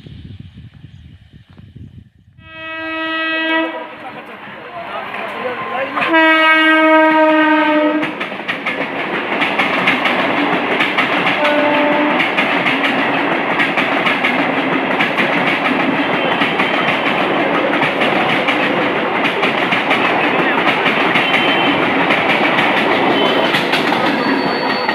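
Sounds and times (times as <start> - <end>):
train horn: 2.4 - 4.0, 5.4 - 8.2, 11.4 - 12.4, 21.2 - 21.9, 23.0 - 23.7
train wheels clattering over rails: 6.0 - 24.9.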